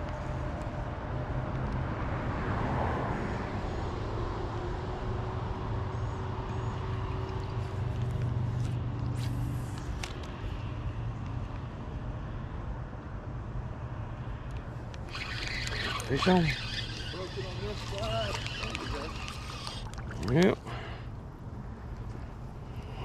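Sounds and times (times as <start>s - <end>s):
sharp clicks: 14.5s - 20.6s
engine humming: 14.5s - 23.0s.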